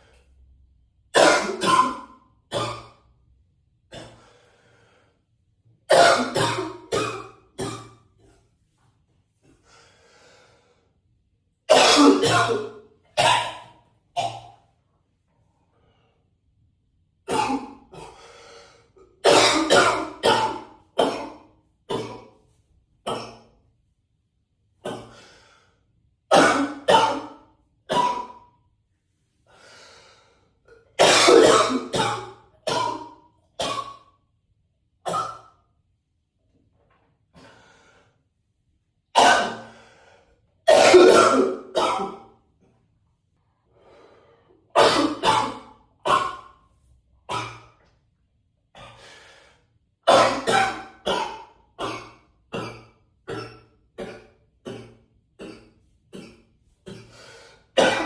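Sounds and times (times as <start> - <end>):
man coughing in echoing bathroom: 1.1 - 3.1, 3.9 - 4.4, 5.9 - 8.4, 11.7 - 14.7, 17.3 - 18.4, 19.0 - 22.4, 23.0 - 23.5, 24.8 - 25.6, 26.3 - 28.5, 30.8 - 34.1, 35.0 - 35.6, 39.2 - 42.4, 44.7 - 46.6, 47.3 - 47.8, 48.8 - 49.4, 50.1 - 58.0.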